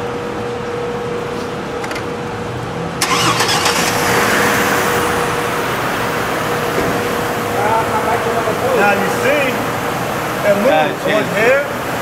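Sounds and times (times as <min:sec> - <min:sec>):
car engine cranking and starting: 0:03.0 - 0:05.5.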